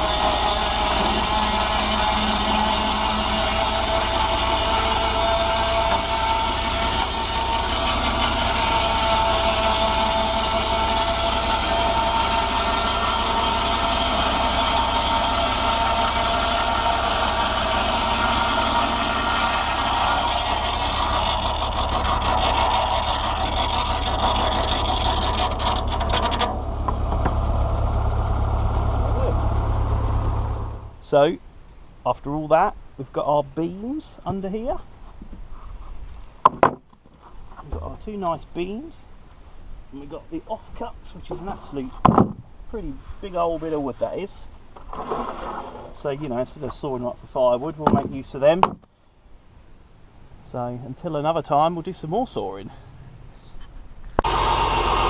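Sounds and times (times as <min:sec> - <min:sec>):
sawmill blade whining: 0:00.0 - 0:31.0, 0:54.2 - 0:55.0
tractor engine running: 0:00.0 - 0:31.0, 0:54.1 - 0:55.0.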